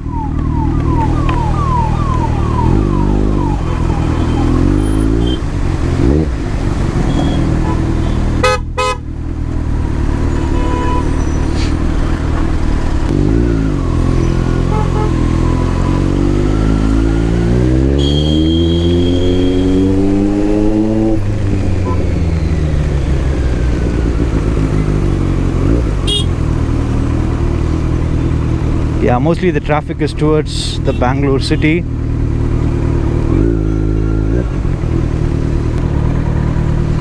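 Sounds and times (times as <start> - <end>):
motorcycle engine revving: 0.0 - 37.0
vehicle horn honking: 4.2 - 5.5, 7.0 - 9.0, 10.3 - 11.8, 14.6 - 16.0, 17.8 - 20.6, 26.0 - 26.4.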